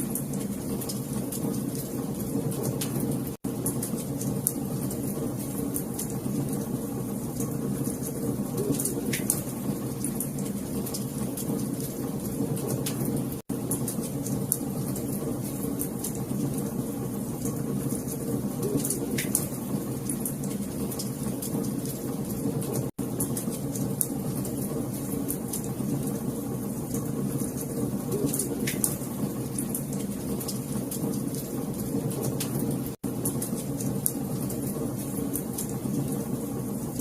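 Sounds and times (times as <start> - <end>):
wood fire crackling: 0.0 - 37.0.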